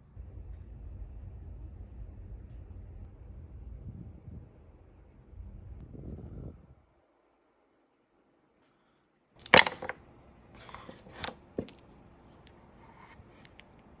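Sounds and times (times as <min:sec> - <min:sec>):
hard objects clacking: 0:09.4 - 0:10.0.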